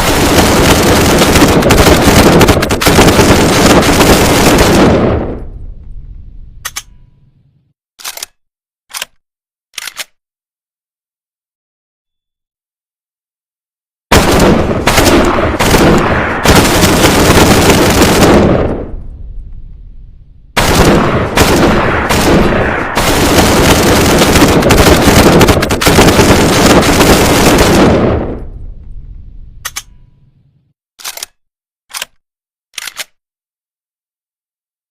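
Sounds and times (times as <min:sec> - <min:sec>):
submachine gun automatic fire: 0:00.0 - 0:05.3, 0:14.1 - 0:18.8, 0:20.6 - 0:28.3
sharp clicks: 0:05.8 - 0:07.1, 0:08.0 - 0:10.2, 0:28.8 - 0:30.1, 0:31.0 - 0:33.2.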